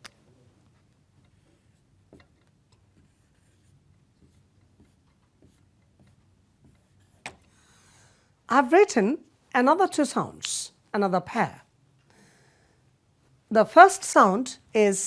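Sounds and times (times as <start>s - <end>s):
marker writing on a whiteboard: 0.7s - 7.6s.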